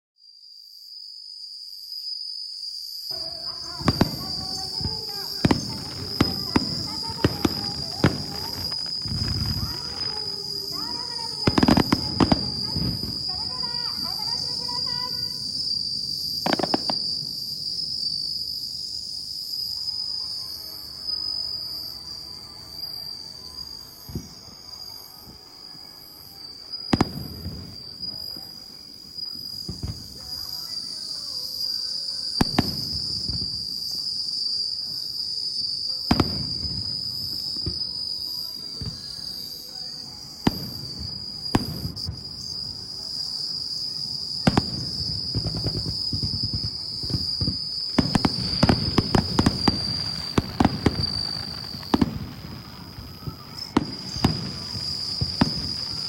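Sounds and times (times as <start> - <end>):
insect chirring: 0.2 - 56.0
fireworks booming: 3.1 - 19.6, 23.6 - 25.4, 26.5 - 31.7, 32.3 - 56.0.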